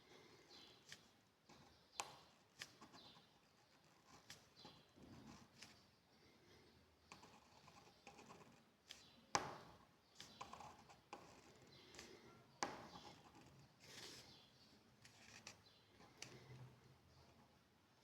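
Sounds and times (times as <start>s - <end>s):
pen scratching on paper: 0.7s - 5.8s, 7.1s - 8.6s, 9.3s - 14.3s.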